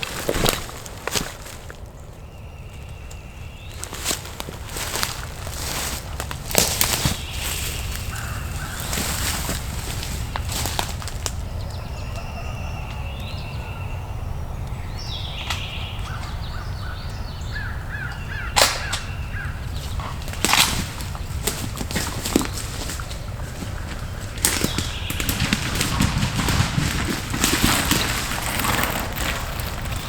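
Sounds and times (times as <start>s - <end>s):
woodland birds calling: 0.0s - 30.0s
crows cawing: 6.6s - 11.4s, 15.6s - 26.0s.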